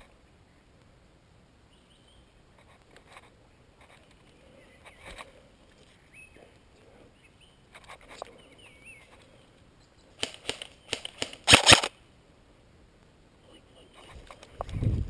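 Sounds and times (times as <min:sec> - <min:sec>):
faint chirps: 0:03.4 - 0:11.0
airsoft gun shots: 0:10.2 - 0:11.9.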